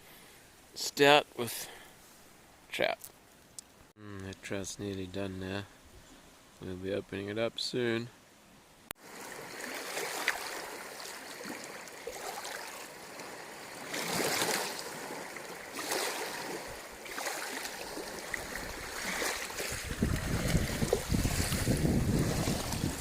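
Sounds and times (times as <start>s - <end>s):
gusting wind: 9.0s - 23.0s.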